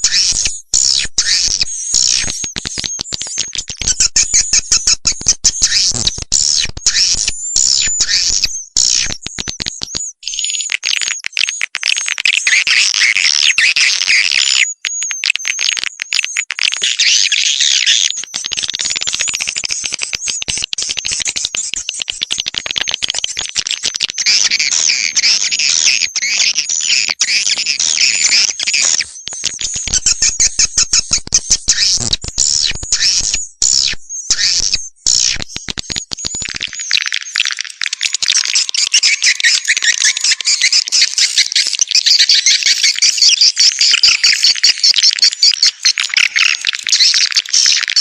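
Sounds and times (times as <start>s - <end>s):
swiftlets twittering and chirping: 0.0s - 48.0s
fast clicking: 18.2s - 25.4s.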